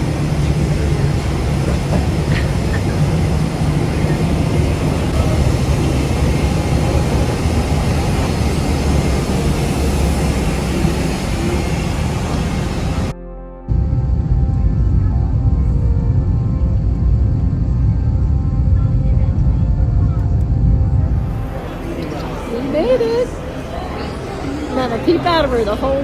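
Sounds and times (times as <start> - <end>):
jet engine rumble in cabin: 0.0 - 13.1, 13.7 - 24.2.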